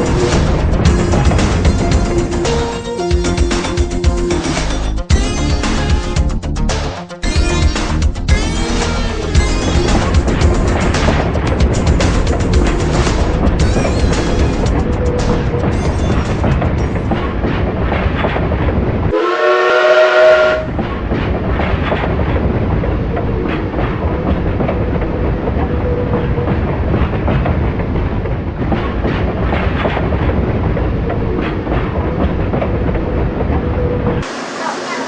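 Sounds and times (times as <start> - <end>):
train rumbling on rails: 0.0 - 6.6, 7.9 - 35.0
train horn: 19.1 - 20.7.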